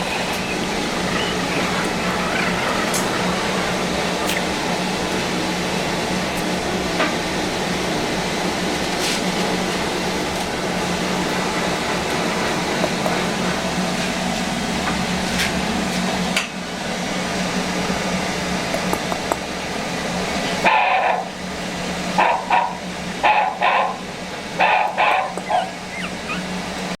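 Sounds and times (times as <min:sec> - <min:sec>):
steady background hum: 0:00.0 - 0:27.0
puppy yipping: 0:25.1 - 0:26.5.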